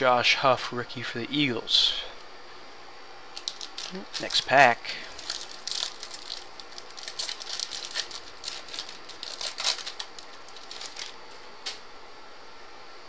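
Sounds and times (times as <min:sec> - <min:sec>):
foil wrapper crinkling and tearing: 0:03.3 - 0:11.8
cards being handled: 0:05.1 - 0:11.8.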